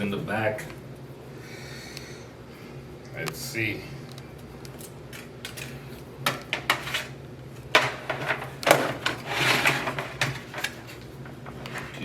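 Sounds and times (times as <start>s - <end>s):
scraping and rustling clatter: 5.2s - 12.0s.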